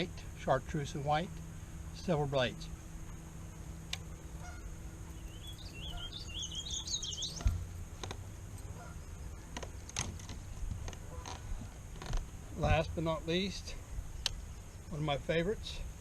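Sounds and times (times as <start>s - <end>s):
songbird warbling: 2.7s - 10.0s
thump: 7.4s - 7.7s
faint clicks: 14.2s - 14.4s.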